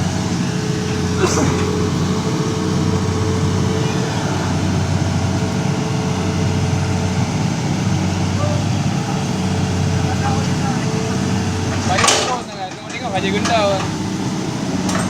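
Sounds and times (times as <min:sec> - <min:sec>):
heavy diesel engine running: 0:00.0 - 0:15.0.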